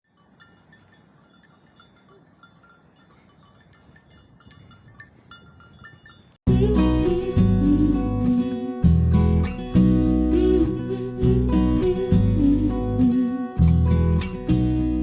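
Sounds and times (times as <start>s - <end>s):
small metal bells clinking: 0.0s - 6.5s
strummed acoustic guitar music: 6.5s - 15.0s.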